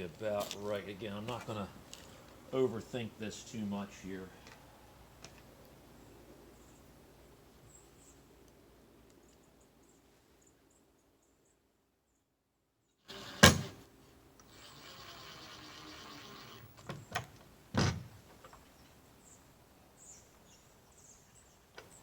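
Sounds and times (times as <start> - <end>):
faint hiss: 13.0 - 22.0.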